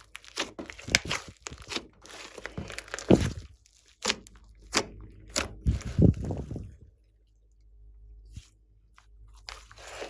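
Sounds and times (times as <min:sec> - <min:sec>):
slime crackling: 0:00.0 - 0:06.8.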